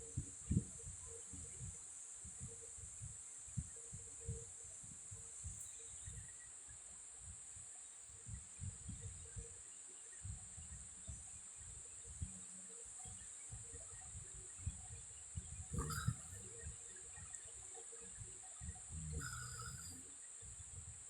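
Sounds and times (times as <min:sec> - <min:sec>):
steady high hiss: 0:00.0 - 0:21.0
woman snoring faintly: 0:15.8 - 0:16.5, 0:19.0 - 0:20.0.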